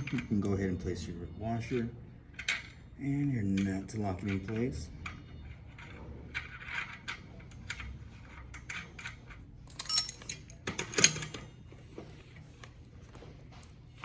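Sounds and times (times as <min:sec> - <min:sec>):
small metal parts clinking: 0:08.5 - 0:11.4.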